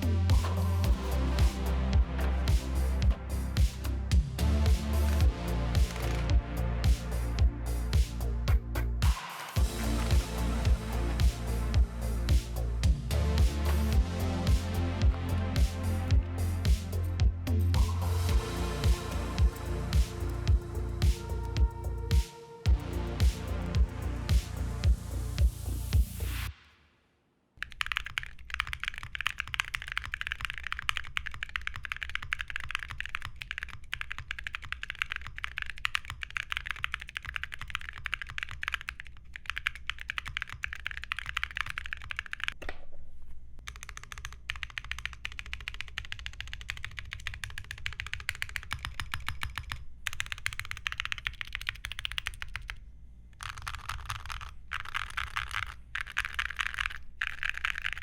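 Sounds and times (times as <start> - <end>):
mechanical keyboard typing clicks: 27.6 - 42.6, 43.7 - 52.8, 53.4 - 58.0.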